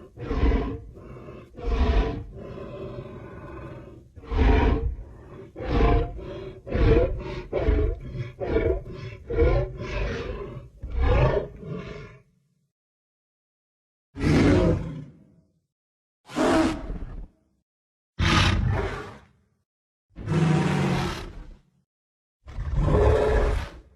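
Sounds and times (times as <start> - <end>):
creature roars and grunts: 0.0 - 12.2, 14.2 - 15.2, 16.3 - 17.3, 20.2 - 21.6, 22.5 - 23.9.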